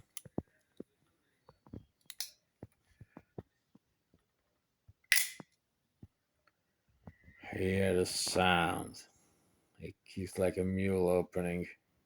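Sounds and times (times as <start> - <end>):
knife small clicks: 5.1 - 5.4
switchblade snapping open: 5.1 - 5.4.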